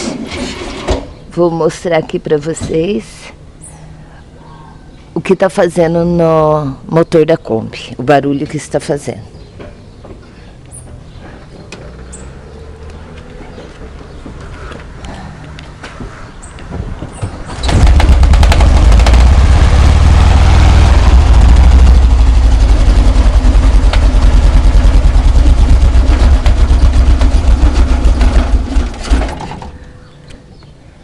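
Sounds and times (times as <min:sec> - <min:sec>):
engine starting and running: 0:17.4 - 0:29.9
rapid engine knocking: 0:17.6 - 0:29.5.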